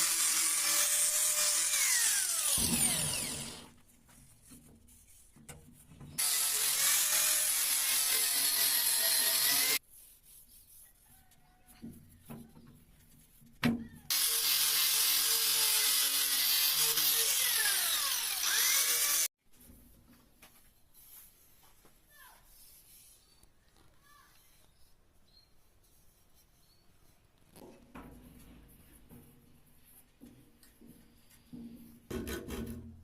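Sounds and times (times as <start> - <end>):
electric power tool running: 0.0 - 3.7, 6.2 - 9.8, 14.1 - 19.3.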